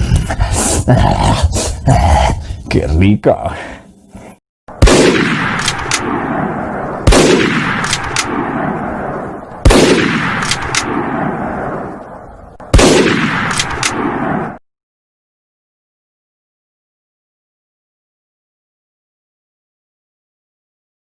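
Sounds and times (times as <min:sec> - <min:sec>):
loud echoing gunshots: 0:04.7 - 0:14.6
small sharp clicks: 0:05.6 - 0:06.1, 0:07.8 - 0:08.4, 0:10.4 - 0:10.9, 0:13.5 - 0:14.0.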